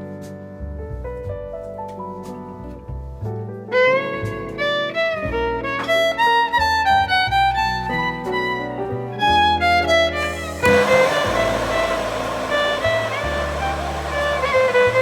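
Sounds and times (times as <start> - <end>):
bass line: 10.3 - 15.0.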